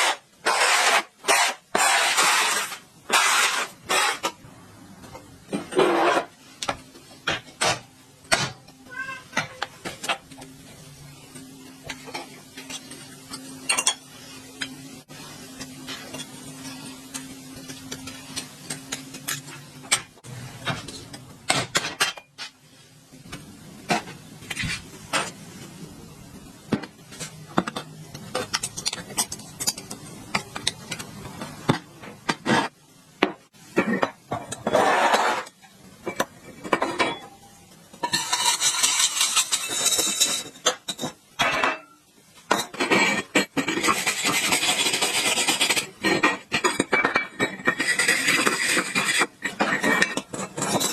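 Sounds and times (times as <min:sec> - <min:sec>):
scraping or rubbing: 0:00.0 - 0:04.3, 0:05.6 - 0:06.4, 0:34.6 - 0:35.5, 0:38.0 - 0:40.6, 0:42.8 - 0:50.9.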